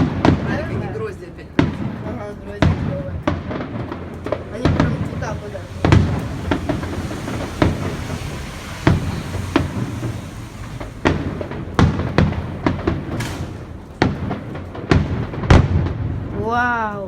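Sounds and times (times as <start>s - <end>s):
fireworks bangs: 0.0s - 16.6s
low continuous rumble: 0.0s - 17.0s.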